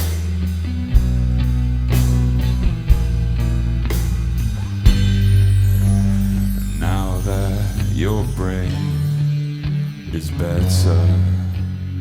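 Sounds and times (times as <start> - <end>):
drum and cymbal hits: 0.0 - 8.4
electric guitars and bass: 0.0 - 12.0.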